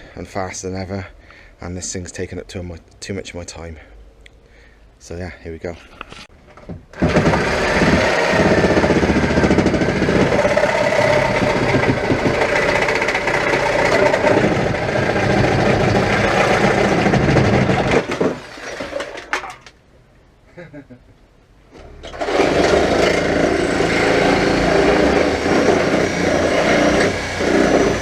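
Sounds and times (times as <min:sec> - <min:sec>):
reciprocating saw cutting sheet metal: 0:07.0 - 0:18.0, 0:22.1 - 0:28.0.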